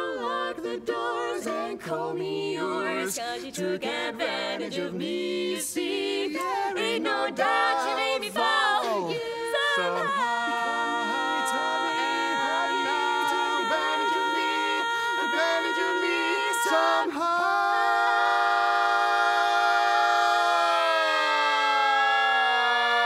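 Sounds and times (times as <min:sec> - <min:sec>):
quartet singing a cappella: 0:00.0 - 0:20.4.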